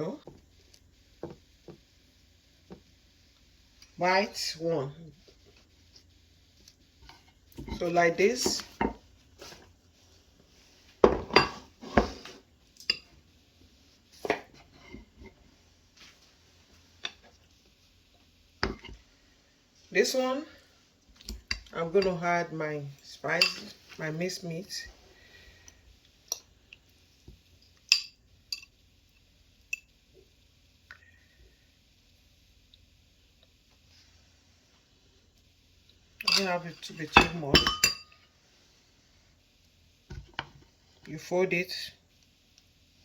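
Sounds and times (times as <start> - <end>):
utensils clinking against dishes: 36.2 - 38.2.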